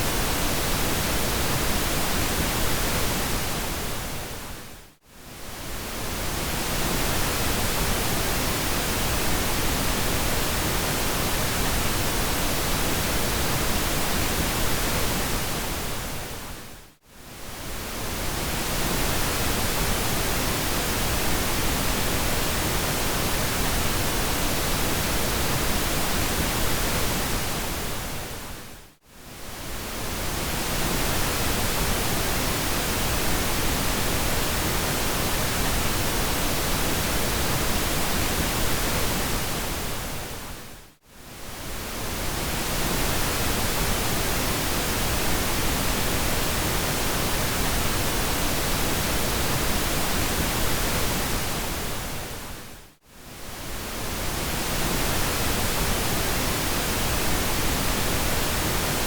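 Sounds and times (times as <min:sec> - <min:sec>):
pink noise hiss: 0:29.2 - 0:59.0.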